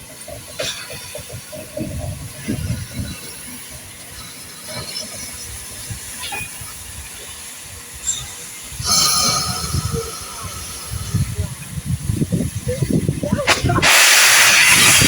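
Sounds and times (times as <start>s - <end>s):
steam hissing from locomotive: 0.0s - 15.0s
low rumbling: 8.8s - 13.2s.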